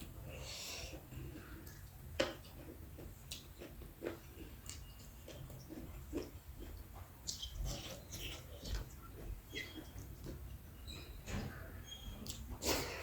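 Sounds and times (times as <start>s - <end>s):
wet chewing and lip smacks: 1.6s - 10.6s.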